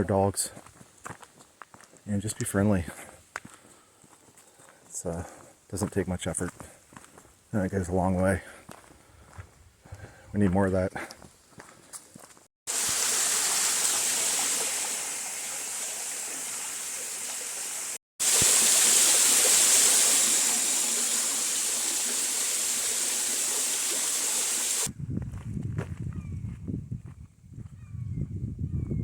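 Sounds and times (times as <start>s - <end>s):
rushing water: 12.7s - 24.9s.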